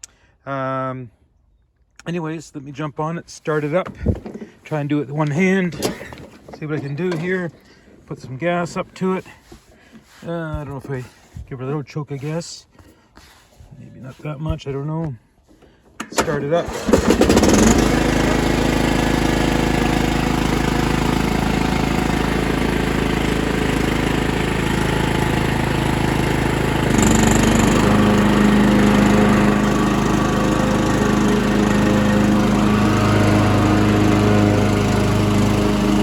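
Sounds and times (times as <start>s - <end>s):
riding mower engine running: 3.6s - 8.0s, 16.1s - 36.0s.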